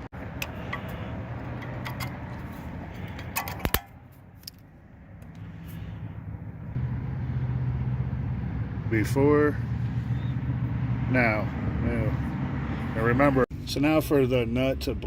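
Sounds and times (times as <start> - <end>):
metal parts clinking: 0.4 - 4.6.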